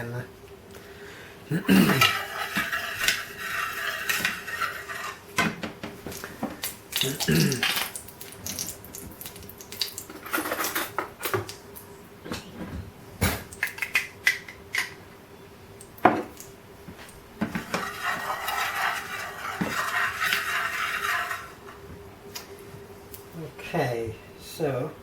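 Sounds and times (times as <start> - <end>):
kitchen utensils and dishes clattering: 1.8 - 5.6, 10.1 - 11.5, 17.4 - 21.6.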